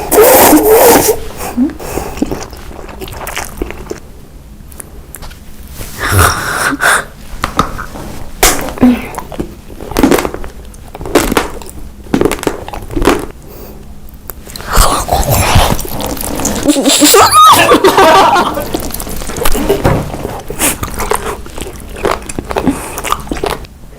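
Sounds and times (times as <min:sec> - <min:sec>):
biting and chewing: 0:01.9 - 0:04.1, 0:08.4 - 0:13.4, 0:14.1 - 0:23.7.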